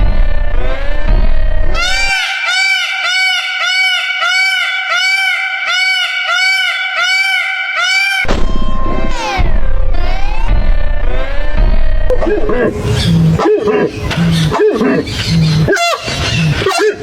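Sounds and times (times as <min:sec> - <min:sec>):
animal high-pitched calls: 0:01.8 - 0:08.3.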